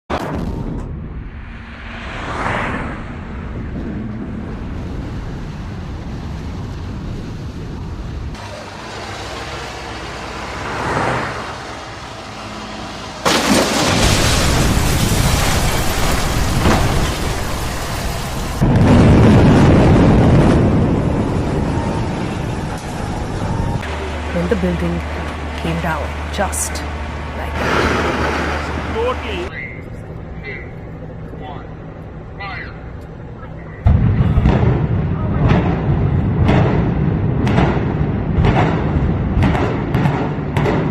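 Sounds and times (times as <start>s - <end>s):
building collapsing: 13.2s - 26.6s.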